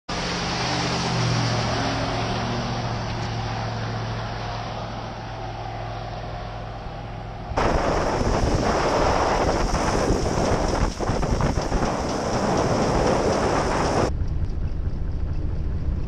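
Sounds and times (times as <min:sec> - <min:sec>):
diesel engine droning: 0:00.1 - 0:16.0
wind buffeting microphone: 0:07.5 - 0:15.0
rushing rattling noise: 0:07.5 - 0:16.0.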